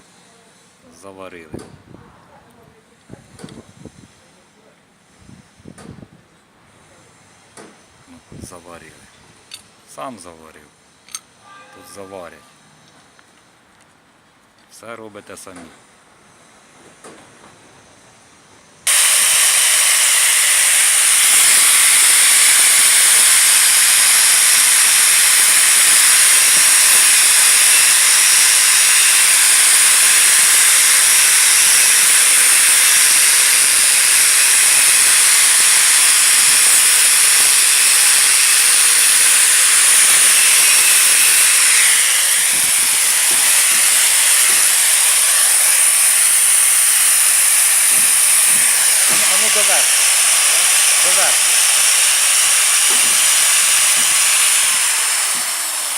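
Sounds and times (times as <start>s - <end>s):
electric welding hiss: 18.9s - 55.9s.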